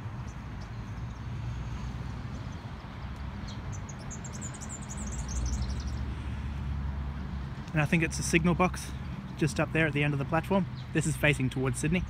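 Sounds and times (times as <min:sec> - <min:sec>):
small bird chirping: 0:02.3 - 0:06.1.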